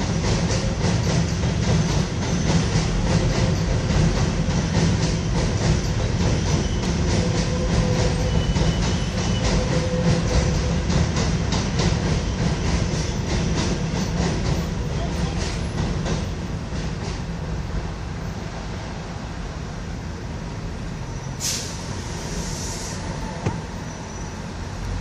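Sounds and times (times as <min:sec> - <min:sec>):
subway train rumble: 0:00.0 - 0:25.0
faint wheel squeal: 0:06.4 - 0:10.6, 0:21.0 - 0:24.6.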